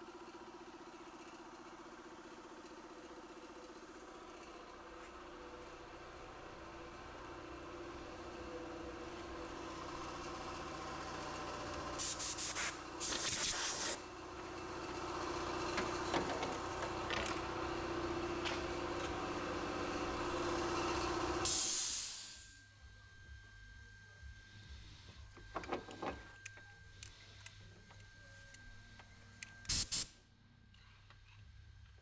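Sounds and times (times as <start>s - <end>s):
air hiss bursts: 12.0s - 14.0s, 21.4s - 22.5s, 29.7s - 30.1s.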